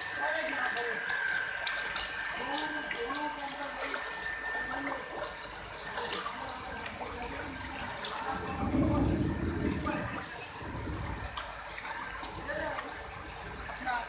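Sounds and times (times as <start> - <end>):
water running and splashing: 0.0 - 14.0
heavy rain: 6.8 - 14.0
low rumble: 7.5 - 11.6.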